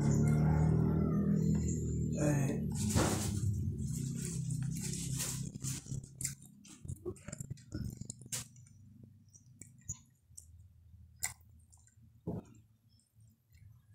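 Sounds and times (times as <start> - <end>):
person chewing: 3.8 - 12.0.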